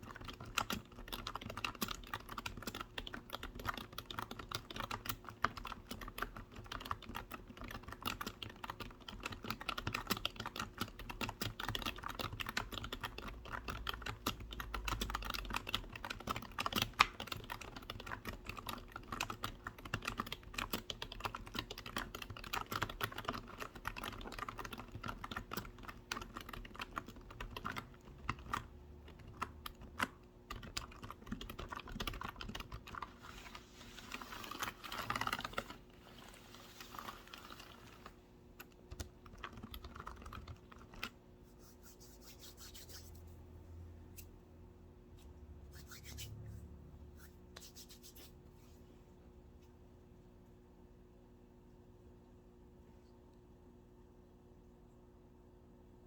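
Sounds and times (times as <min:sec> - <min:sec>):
fast typing on computer keyboard: 0:00.0 - 0:35.9, 0:36.8 - 0:41.2.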